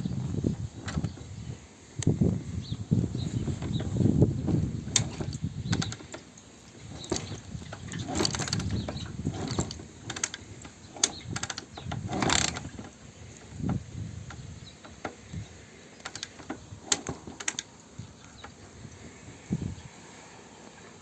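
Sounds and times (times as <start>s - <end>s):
metal clunks and clicks: 0.8s - 1.3s, 3.3s - 18.6s.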